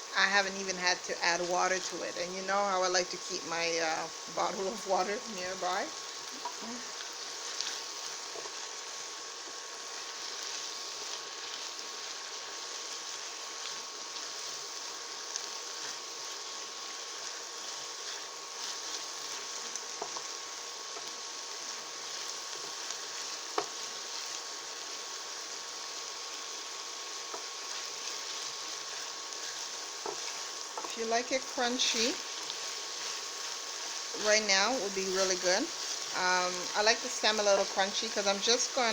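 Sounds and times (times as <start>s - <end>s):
vegetables sizzling in a frying pan: 0.0s - 38.9s.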